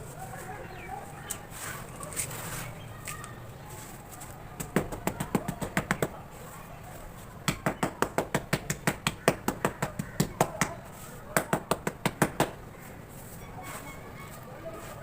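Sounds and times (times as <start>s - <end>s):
sharp taps on hardened cement: 4.6s - 6.2s, 7.4s - 12.6s.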